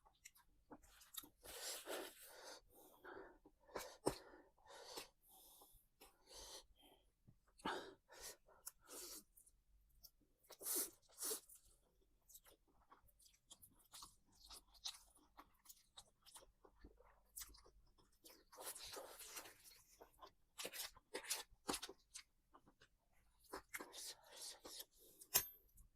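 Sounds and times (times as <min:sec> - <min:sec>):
chewing and biting food: 0:10.5 - 0:25.3.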